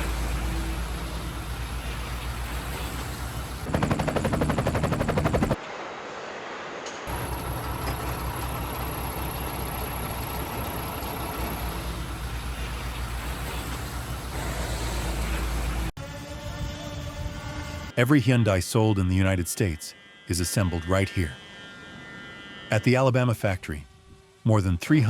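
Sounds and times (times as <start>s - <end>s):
rapid mechanical rattling: 0.0s - 5.6s, 7.1s - 15.9s
machinery hum: 0.0s - 18.0s.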